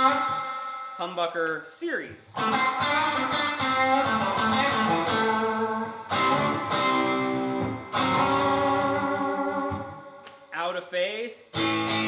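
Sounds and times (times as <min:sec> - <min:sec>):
electric guitar chords strummed: 0:00.0 - 0:01.0, 0:02.3 - 0:10.3, 0:11.5 - 0:12.0.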